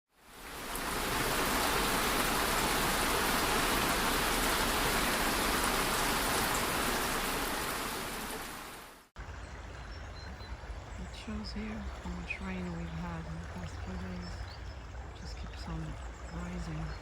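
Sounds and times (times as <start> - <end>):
heavy rain falling: 0.2 - 9.1.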